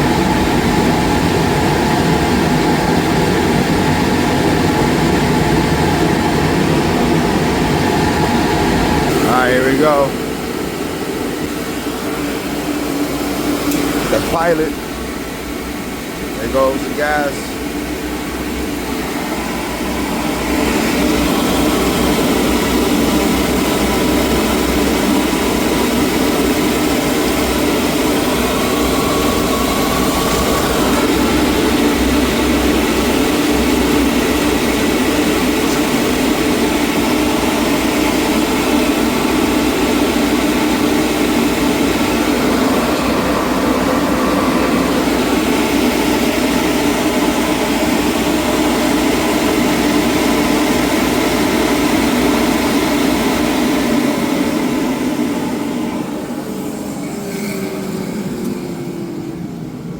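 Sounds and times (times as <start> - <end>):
gas boiler burner rushing: 0.0 - 59.9.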